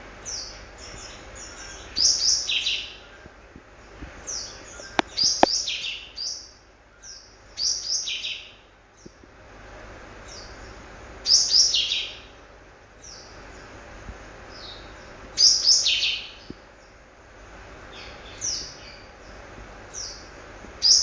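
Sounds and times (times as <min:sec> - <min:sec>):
bird chirping call: 0:00.2 - 0:03.3, 0:04.2 - 0:09.2, 0:10.2 - 0:12.4, 0:14.5 - 0:17.0, 0:17.9 - 0:21.0.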